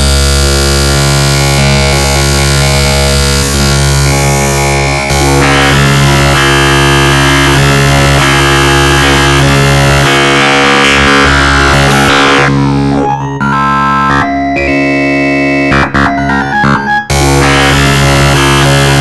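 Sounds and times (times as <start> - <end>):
synthesizer ringtone arrangement: 10.0 - 18.6.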